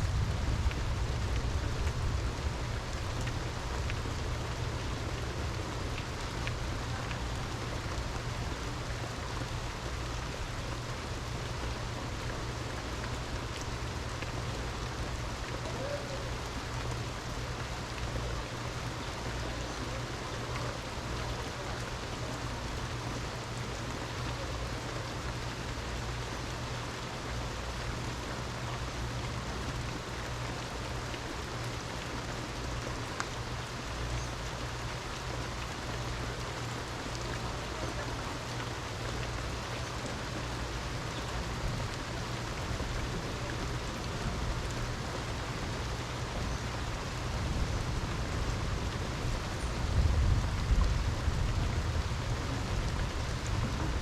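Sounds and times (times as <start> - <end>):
low rumble: 0.0 - 7.2
steady rain falling: 0.0 - 54.0.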